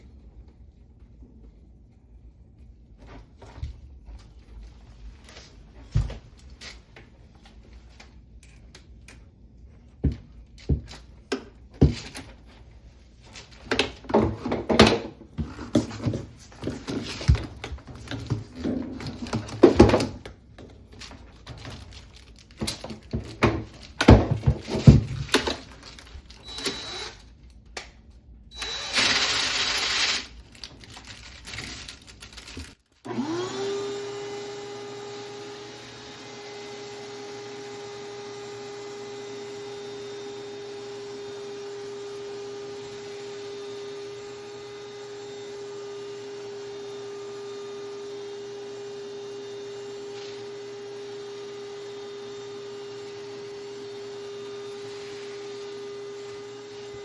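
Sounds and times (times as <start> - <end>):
motor hum spinning up: 28.6 - 30.3, 33.1 - 57.0.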